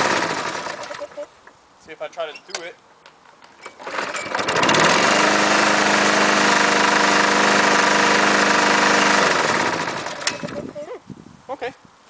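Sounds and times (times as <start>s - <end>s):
mower engine starting and running: 0.0s - 1.2s, 3.6s - 10.9s.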